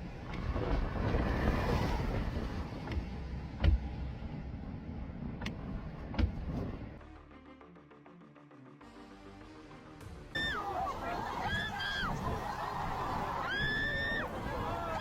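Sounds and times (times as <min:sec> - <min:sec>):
wind buffeting microphone: 0:00.0 - 0:06.9
soft music: 0:06.8 - 0:11.4.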